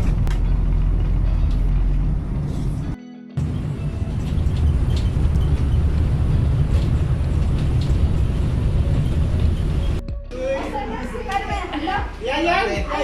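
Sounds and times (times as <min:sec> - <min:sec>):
road vehicle rumble: 0:00.0 - 0:10.0.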